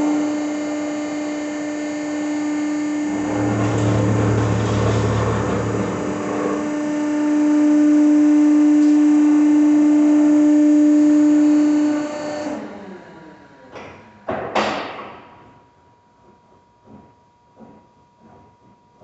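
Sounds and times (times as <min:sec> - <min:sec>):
hydraulic power unit whining: 0:00.0 - 0:13.7.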